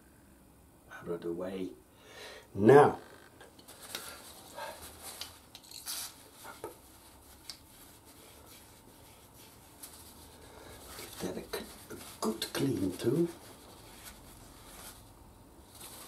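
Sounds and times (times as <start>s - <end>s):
small metal parts clicking and rubbing: 3.6s - 6.2s.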